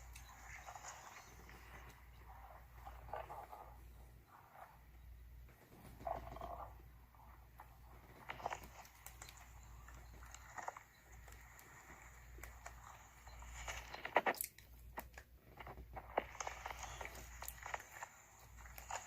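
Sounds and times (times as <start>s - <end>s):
sharp cracks and snaps: 13.6s - 19.0s.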